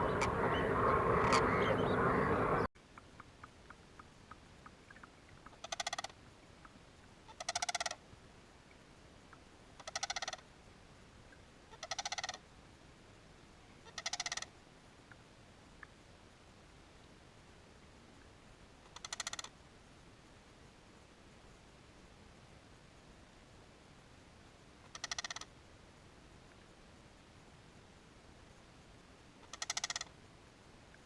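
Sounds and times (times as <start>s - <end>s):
animal rattling call: 0.0s - 2.7s, 5.5s - 6.1s, 7.4s - 8.0s, 9.8s - 10.4s, 11.7s - 12.4s, 13.9s - 14.5s, 19.0s - 19.5s, 24.9s - 25.5s, 29.4s - 30.1s
faint ticks: 2.9s - 8.0s, 8.7s - 10.5s, 13.9s - 15.2s, 18.2s - 19.6s, 24.8s - 25.7s, 26.4s - 26.8s, 29.4s - 30.2s.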